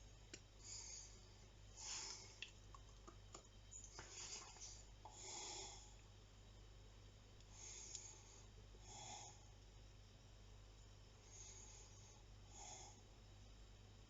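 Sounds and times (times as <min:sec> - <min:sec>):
faint breathing: 0:00.6 - 0:02.4, 0:03.8 - 0:06.0, 0:07.5 - 0:09.6, 0:11.2 - 0:13.2.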